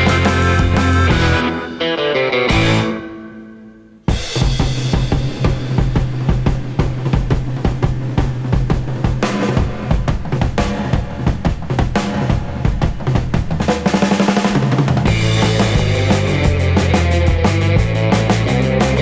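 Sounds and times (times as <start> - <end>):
steady bass line: 0.0 - 1.7, 2.5 - 3.1, 15.0 - 19.0
busy drum kit: 0.0 - 3.4, 4.0 - 19.0
rock music: 0.0 - 19.0.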